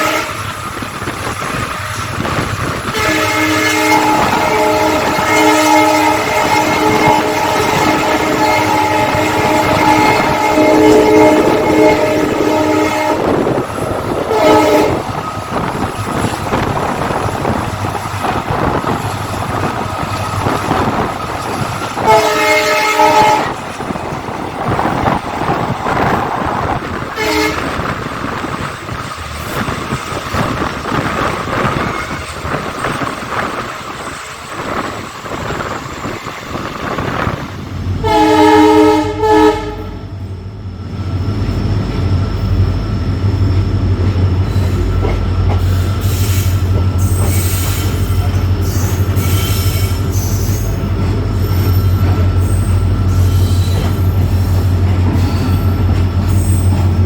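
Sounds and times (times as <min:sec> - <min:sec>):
locomotive air horn blasts: 0:00.0 - 0:00.5, 0:02.9 - 0:13.5, 0:14.2 - 0:15.1, 0:22.0 - 0:23.6, 0:27.2 - 0:27.8, 0:38.0 - 0:40.0
train wheels clattering on rails: 0:00.0 - 0:38.4, 0:40.8 - 0:57.0.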